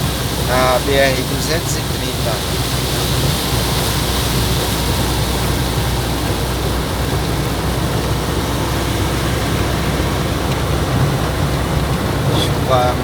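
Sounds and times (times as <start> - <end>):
diesel truck engine running: 0.0 - 13.0
heavy rain hissing: 0.0 - 13.0
wet road noise: 0.0 - 13.0.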